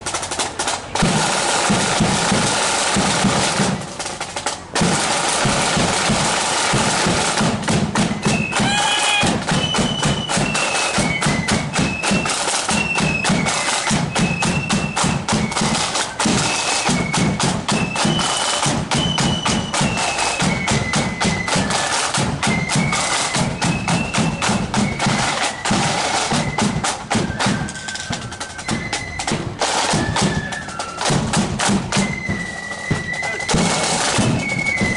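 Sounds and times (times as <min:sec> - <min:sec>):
side drums rattling: 0:00.0 - 0:34.9
bass drum march beat: 0:01.0 - 0:34.9
flutes playing high melody: 0:07.4 - 0:34.9.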